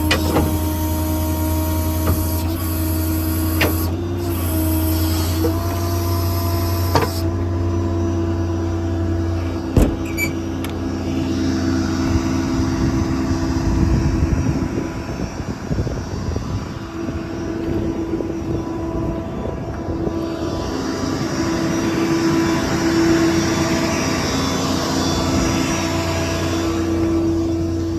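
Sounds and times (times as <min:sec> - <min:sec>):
diesel engine running: 0:00.0 - 0:27.9
sharp clunk: 0:09.8 - 0:10.8.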